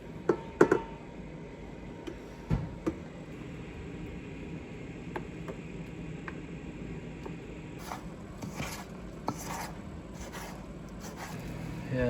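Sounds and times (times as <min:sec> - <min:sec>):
low steady hum: 0:00.0 - 0:12.0
spoon scraping batter in bowl: 0:07.8 - 0:11.6.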